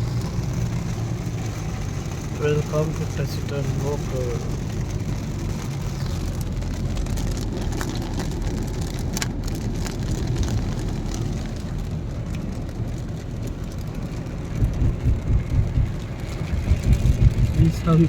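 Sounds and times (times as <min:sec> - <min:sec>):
car rumbling in traffic: 0:00.0 - 0:18.0
heavy rain on a car: 0:00.0 - 0:18.0.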